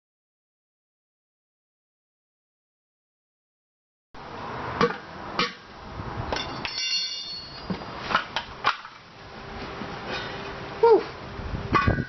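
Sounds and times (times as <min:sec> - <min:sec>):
metal tools knocking on wheel rim: 0:06.3 - 0:08.4
metallic ring: 0:06.4 - 0:07.7.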